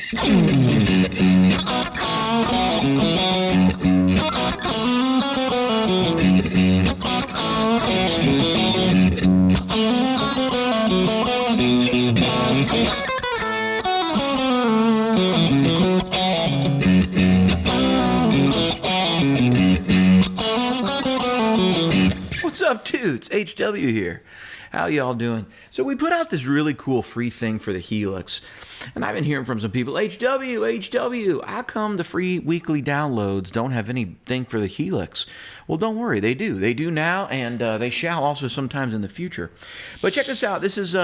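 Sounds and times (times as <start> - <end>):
overdriven electric guitar riff: 0.0 - 22.4.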